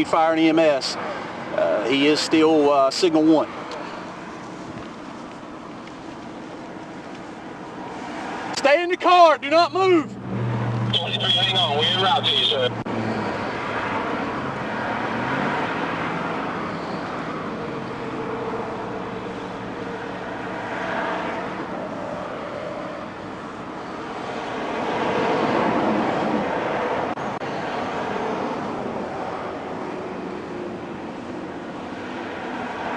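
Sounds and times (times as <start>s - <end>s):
highway traffic rumble: 0.0s - 32.9s.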